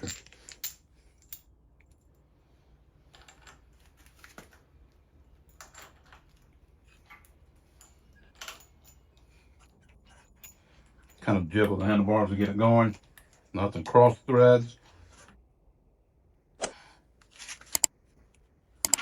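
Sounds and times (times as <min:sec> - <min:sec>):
small metal hardware clinking: 0:00.0 - 0:02.3, 0:05.3 - 0:13.5.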